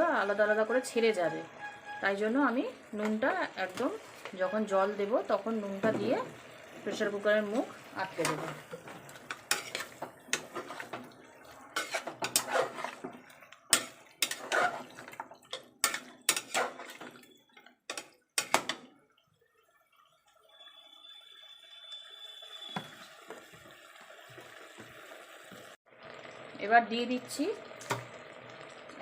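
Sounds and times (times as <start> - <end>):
spatula scraping a pot: 8.2 - 11.1, 11.7 - 17.3.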